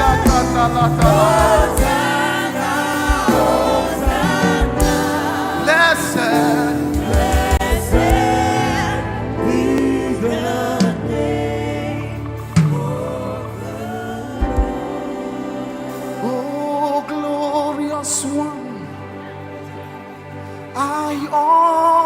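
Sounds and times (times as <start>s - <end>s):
bass notes: 0.0s - 5.7s, 6.4s - 15.9s
drum hits: 0.0s - 5.7s, 6.4s - 8.6s, 14.4s - 15.1s
band playing: 0.0s - 20.0s
choir singing: 0.0s - 22.0s.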